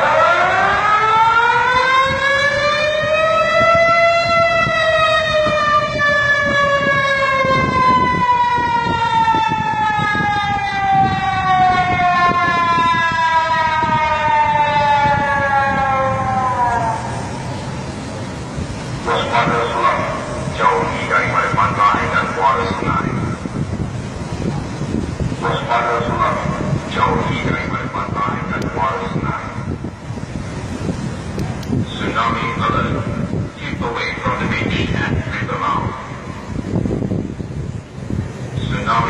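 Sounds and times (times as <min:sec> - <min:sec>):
tsunami siren wail: 0:00.0 - 0:17.6.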